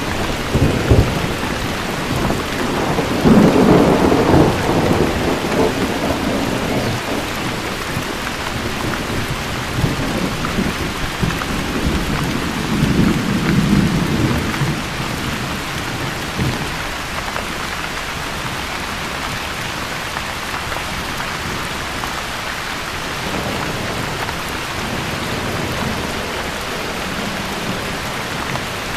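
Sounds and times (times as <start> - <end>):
thunder rumbling: 0.0 - 16.8, 23.2 - 28.9
rain falling: 0.0 - 28.9.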